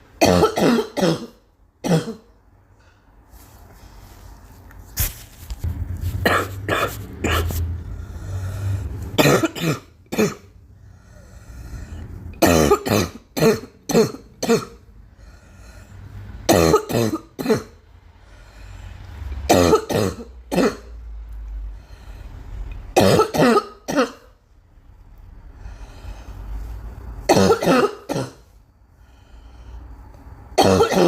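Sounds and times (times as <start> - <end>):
girl coughing: 0.2 - 2.3, 6.2 - 7.6, 9.2 - 10.5, 12.4 - 14.8, 16.5 - 17.8, 19.5 - 20.9, 23.0 - 24.3, 27.3 - 28.4, 30.6 - 31.0.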